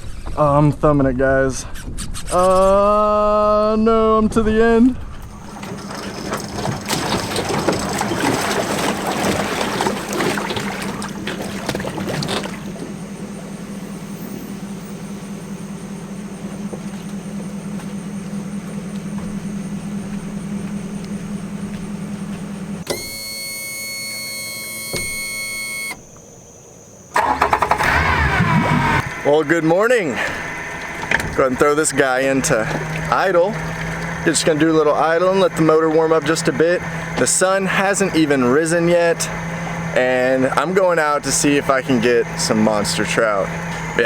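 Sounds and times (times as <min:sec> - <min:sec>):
outboard motor humming: 0:05.0 - 0:44.0
water rushing: 0:05.2 - 0:13.0, 0:27.2 - 0:44.0
ringing electronic tone: 0:22.9 - 0:26.0.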